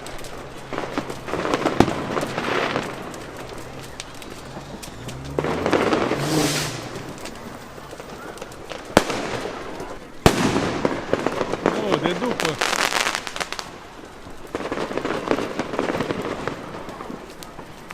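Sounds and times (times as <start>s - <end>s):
firework bang: 0.0s - 13.8s
crackling firework bursts: 0.0s - 17.9s.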